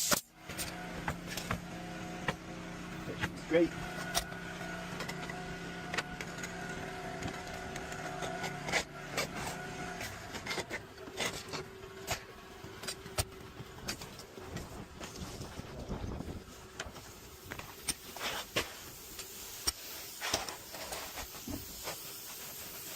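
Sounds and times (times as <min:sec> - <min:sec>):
machine hum: 0:00.3 - 0:17.9.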